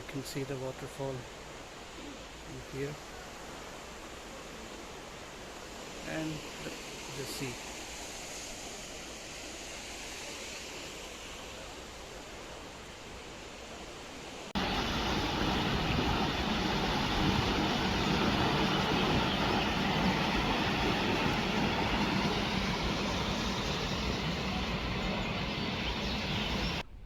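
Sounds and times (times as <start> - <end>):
waterfall rushing: 14.6 - 26.8.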